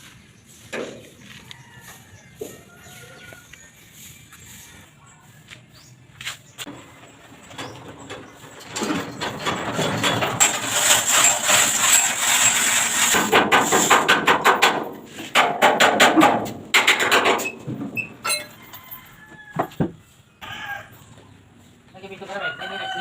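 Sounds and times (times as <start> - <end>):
rapid metal-on-metal knocking: 8.1 - 17.6.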